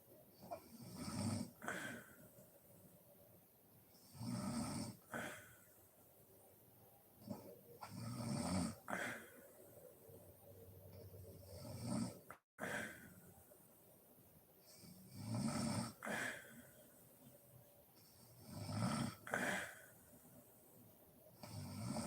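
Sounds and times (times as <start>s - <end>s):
quiet breathing: 0.0s - 22.0s
woman snoring: 0.4s - 2.2s, 4.0s - 5.6s, 7.8s - 9.4s, 11.4s - 13.2s, 14.7s - 16.7s, 18.0s - 20.0s, 21.4s - 22.0s.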